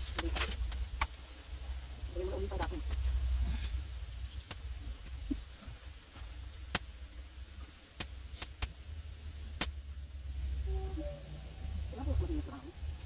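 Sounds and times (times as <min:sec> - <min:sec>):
clicks and knocks in a wok: 0:00.0 - 0:01.2, 0:06.2 - 0:08.8
low cooking rumble: 0:00.0 - 0:13.0.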